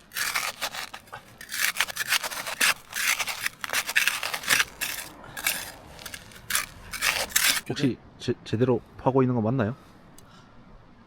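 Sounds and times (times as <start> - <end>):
shovel scraping through soil: 0.0 - 7.7.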